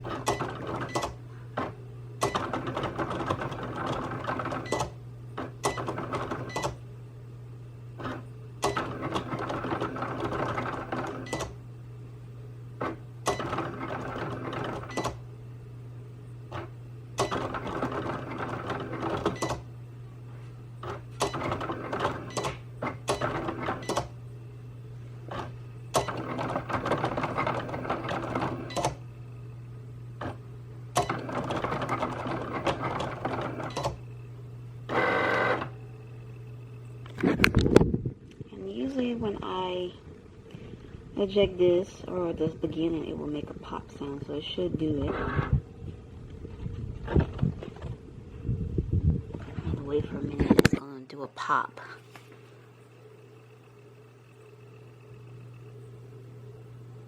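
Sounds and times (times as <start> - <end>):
steady low hum: 0.0 - 57.0
cutting machine motors whirring: 25.2 - 29.4, 30.1 - 37.6, 41.2 - 48.1.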